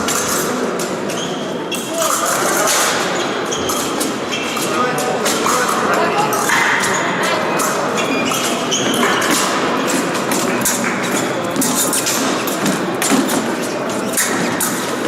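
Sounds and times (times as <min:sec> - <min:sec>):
shoe squeaks: 0:01.1 - 0:02.2, 0:03.1 - 0:04.7, 0:06.9 - 0:10.1, 0:11.0 - 0:14.6.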